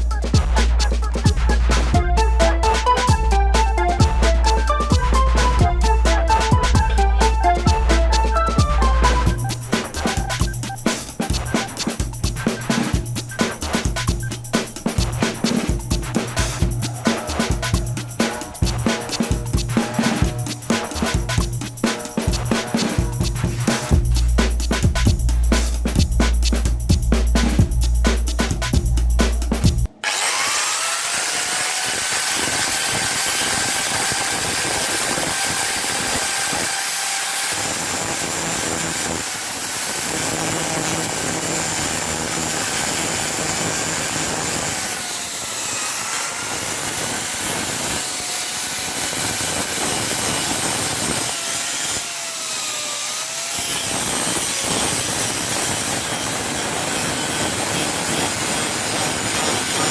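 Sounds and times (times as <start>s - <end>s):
angle grinder grinding steel: 0.8s - 23.9s, 29.9s - 59.9s.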